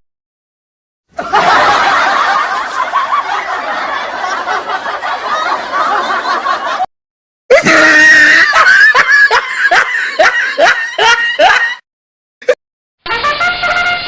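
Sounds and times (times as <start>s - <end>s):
chuckling laugh: 1.2s - 6.9s, 7.6s - 11.8s
loud high-pitched laugh: 1.2s - 6.9s, 7.5s - 11.8s.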